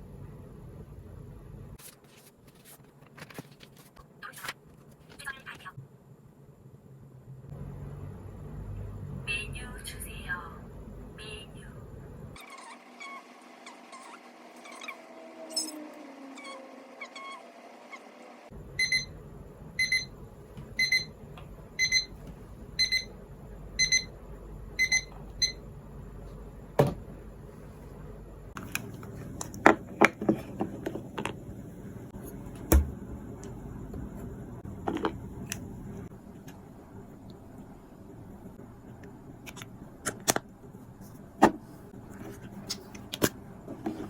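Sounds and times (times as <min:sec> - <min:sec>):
electronic alarm double beeps: 0:18.8 - 0:19.1, 0:19.8 - 0:20.1, 0:20.8 - 0:21.1, 0:21.8 - 0:22.2, 0:22.8 - 0:23.1, 0:23.8 - 0:24.1, 0:24.8 - 0:25.6.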